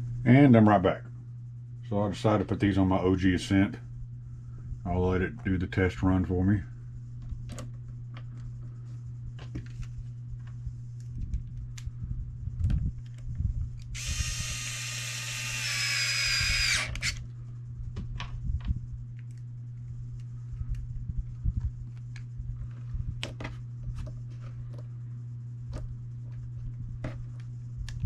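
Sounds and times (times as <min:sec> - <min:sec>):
small electric motor whining: 0:13.9 - 0:17.2.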